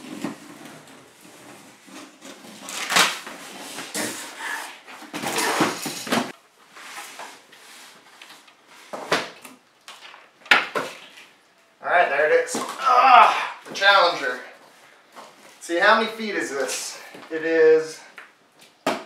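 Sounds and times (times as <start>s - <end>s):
cardboard and vinyl rustling: 0.0s - 11.4s.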